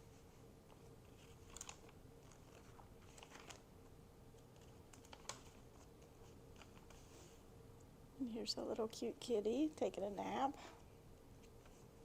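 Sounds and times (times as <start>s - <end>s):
faint steady hum: 0.0s - 12.0s
paper pages rustling: 0.1s - 3.7s, 4.5s - 7.4s.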